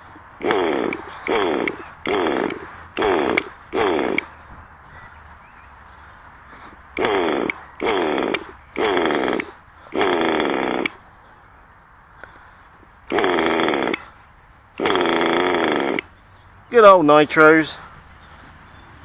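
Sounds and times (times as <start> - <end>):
small engine revving in bursts: 0.0 - 4.4, 6.6 - 11.1, 13.1 - 14.2, 14.8 - 16.2.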